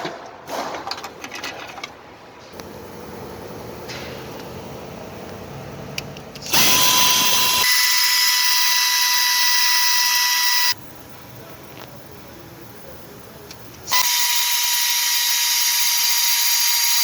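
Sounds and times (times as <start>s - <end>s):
compressed-air tool whine: 2.6s - 10.8s, 13.8s - 17.0s.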